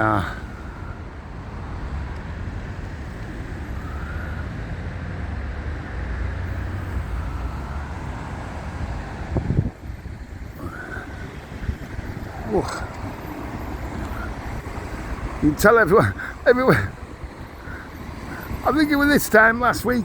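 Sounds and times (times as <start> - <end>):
road traffic rumble: 0.0 - 20.0
wind buffeting microphone: 0.0 - 20.0.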